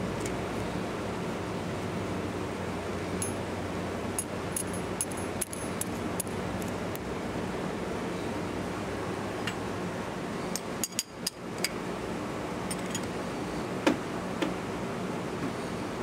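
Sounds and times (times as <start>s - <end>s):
steady low hum: 0.0s - 16.0s
metal tools clinking: 3.2s - 3.4s, 4.2s - 6.3s.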